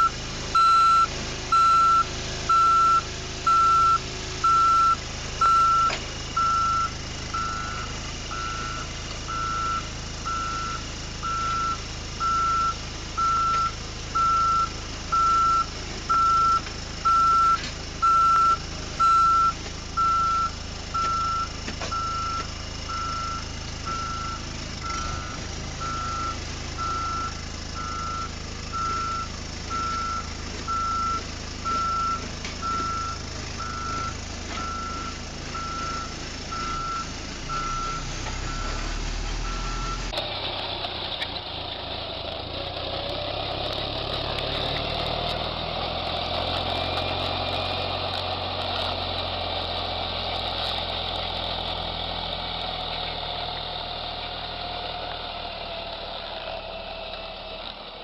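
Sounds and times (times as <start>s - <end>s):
reversing alarm beeping: 0.0s - 40.2s
vehicle engine running: 0.0s - 58.0s.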